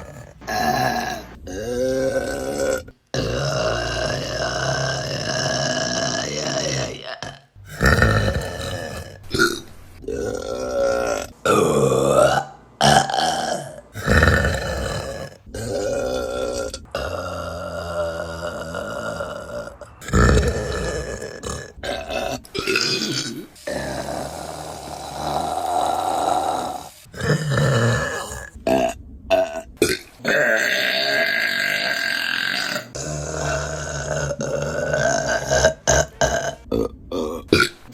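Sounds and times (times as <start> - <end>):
women burping: 0.0 - 37.9.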